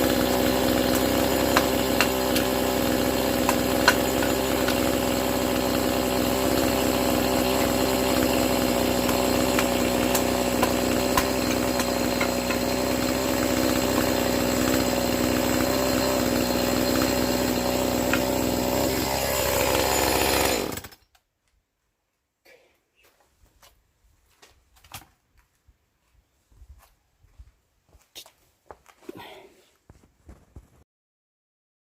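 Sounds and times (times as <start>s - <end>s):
chainsaw engine running: 0.0s - 21.0s.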